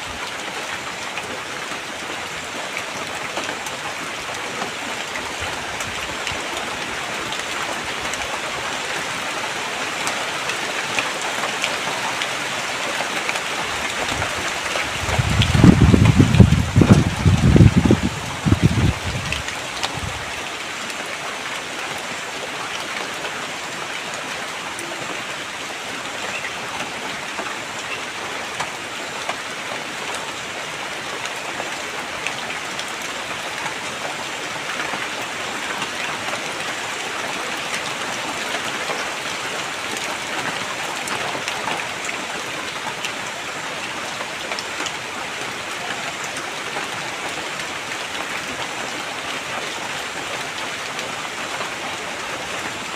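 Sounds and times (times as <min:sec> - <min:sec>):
steady rain hiss: 0:00.0 - 0:52.9
raindrops tapping: 0:10.0 - 0:20.3.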